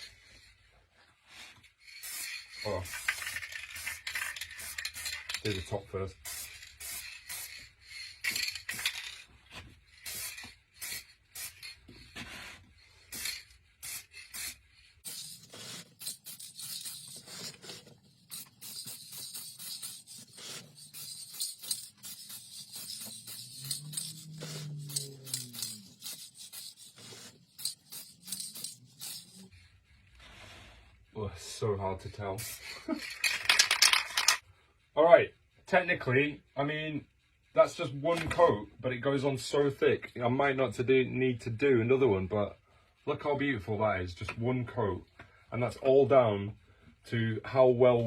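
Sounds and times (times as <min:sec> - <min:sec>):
rubbing and scraping: 0:00.0 - 0:34.4
spray can hissing: 0:01.8 - 0:05.6, 0:06.2 - 0:09.2, 0:09.9 - 0:29.6, 0:32.4 - 0:34.3.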